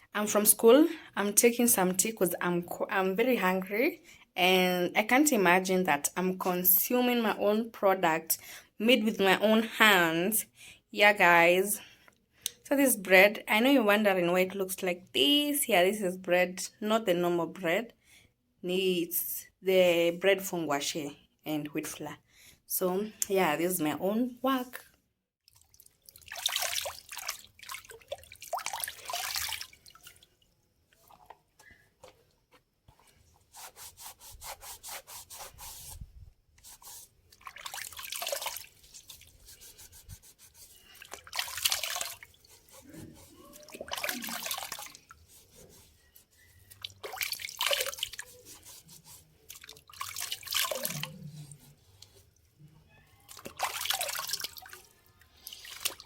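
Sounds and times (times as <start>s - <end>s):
water splashing and dripping: 25.4s - 31.4s, 37.3s - 39.4s, 40.8s - 45.2s, 46.7s - 48.5s, 49.4s - 51.2s, 53.3s - 56.0s
scrubbing strokes: 25.6s - 31.4s, 32.0s - 56.0s.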